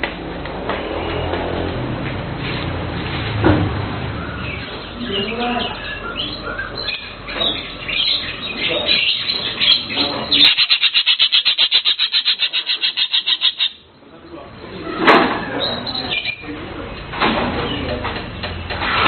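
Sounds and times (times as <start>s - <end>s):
bird fast trill: 4.4s - 13.8s.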